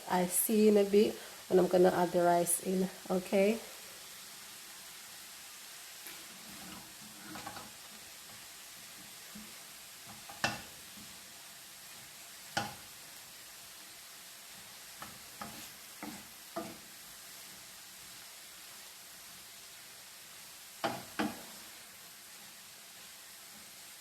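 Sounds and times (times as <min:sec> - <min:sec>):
vegetables sizzling in a frying pan: 0:00.0 - 0:24.0
spoon knocking against pan: 0:10.1 - 0:10.8, 0:12.5 - 0:12.8, 0:15.0 - 0:16.8, 0:20.8 - 0:21.5.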